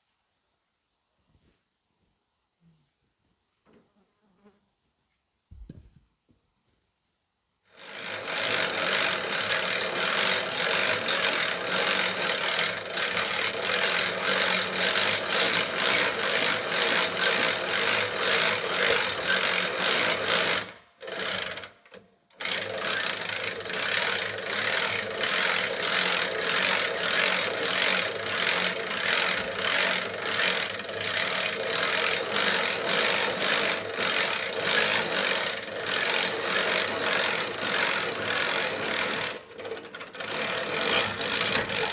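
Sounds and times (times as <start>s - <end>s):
sawmill engine running: 7.9s - 20.7s, 22.6s - 41.9s.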